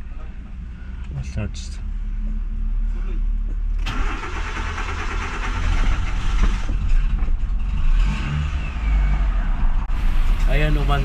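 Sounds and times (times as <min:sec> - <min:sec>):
car engine cranking and starting: 0:03.7 - 0:11.0
engine revving: 0:03.8 - 0:11.0.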